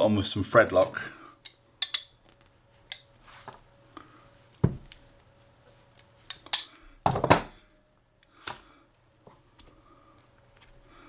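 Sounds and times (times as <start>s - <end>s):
metal tools clinking and clattering: 6.3s - 7.6s.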